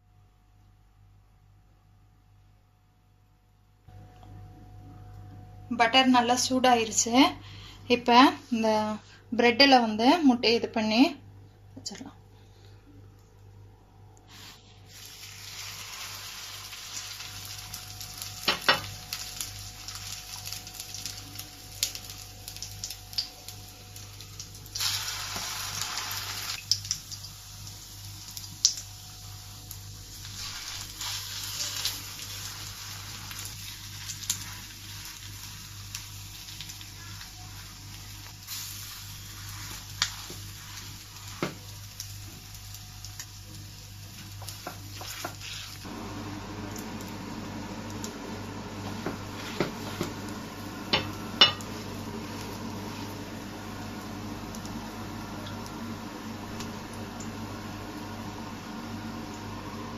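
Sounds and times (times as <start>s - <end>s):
bread sizzling on a griddle: 14.3s - 59.3s.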